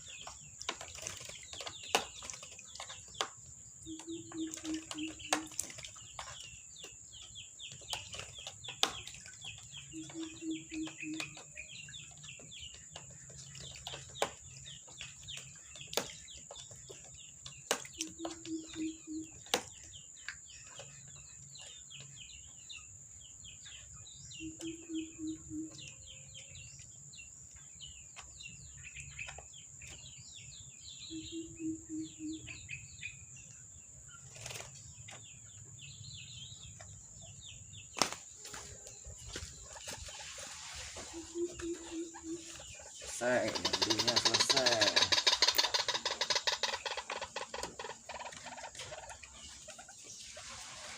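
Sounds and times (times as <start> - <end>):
birds chirping: 0.0 - 50.9
low pulsed bird call: 18.0 - 19.4, 24.4 - 26.0, 31.0 - 32.8, 41.0 - 42.5.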